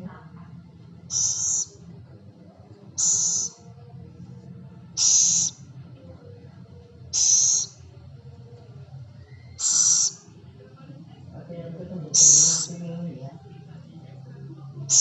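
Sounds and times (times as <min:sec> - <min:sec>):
owl hissing: 0:01.1 - 0:01.8, 0:03.0 - 0:03.6, 0:05.0 - 0:05.7, 0:07.1 - 0:07.8, 0:09.5 - 0:10.3, 0:12.1 - 0:12.8.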